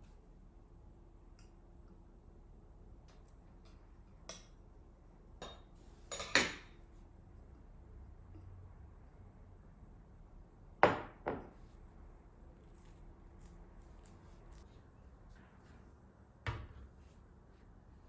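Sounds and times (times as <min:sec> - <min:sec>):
knocks on hard kitchen surface: 0:10.8 - 0:11.6.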